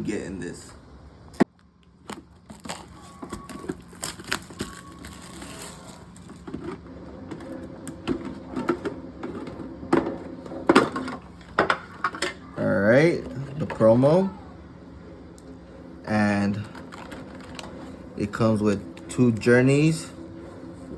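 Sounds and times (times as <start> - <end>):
packaging crinkling and rustling: 2.0 - 6.8.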